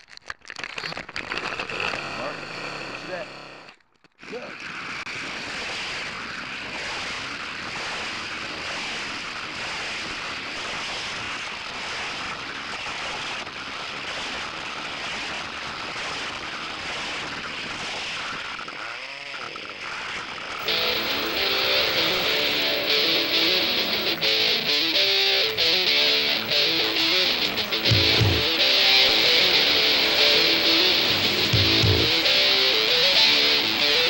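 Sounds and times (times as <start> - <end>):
toy car motors and wheels rattling: 4.2 - 20.7
short wavering whine: 20.6 - 34.0.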